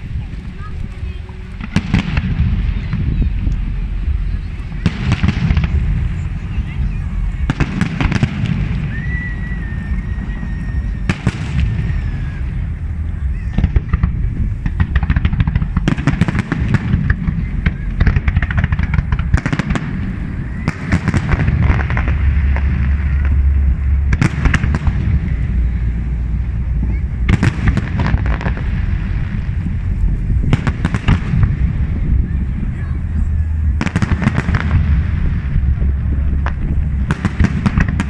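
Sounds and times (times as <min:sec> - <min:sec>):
deep continuous rumble: 0:00.0 - 0:38.0
rapid crackling: 0:00.0 - 0:38.0
high firework whistle: 0:04.3 - 0:29.3.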